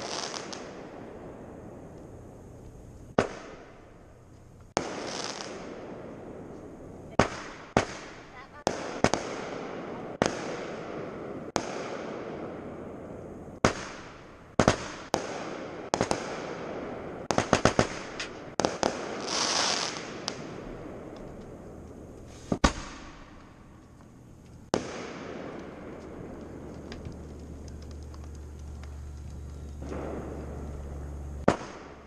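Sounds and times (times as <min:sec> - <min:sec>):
hissing crackle: 0:00.0 - 0:32.0
fireworks bangs with rumble: 0:02.6 - 0:03.9, 0:07.1 - 0:12.8, 0:13.6 - 0:21.6, 0:22.4 - 0:23.6, 0:24.7 - 0:32.0.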